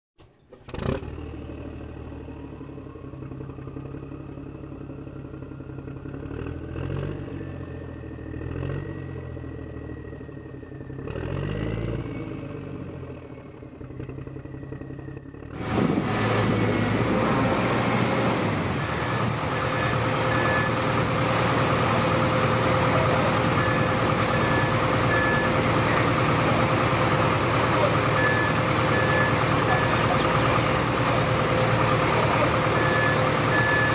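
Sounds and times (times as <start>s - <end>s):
rough truck engine: 0.2s - 33.9s
heavy vehicle engine revving: 10.9s - 13.2s, 15.4s - 33.9s
high reversing beeps: 18.8s - 33.9s.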